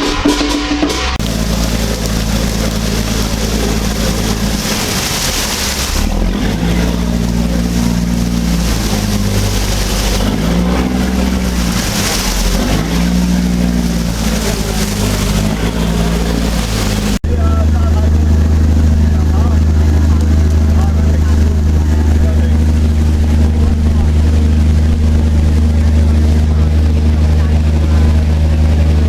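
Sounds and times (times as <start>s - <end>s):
boat engine drone: 0.8s - 29.0s
wind and water hiss: 1.2s - 17.2s.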